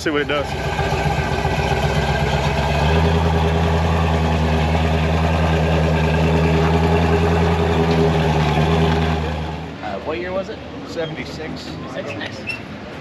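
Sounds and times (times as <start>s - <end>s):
truck engine idling: 0.0s - 9.8s.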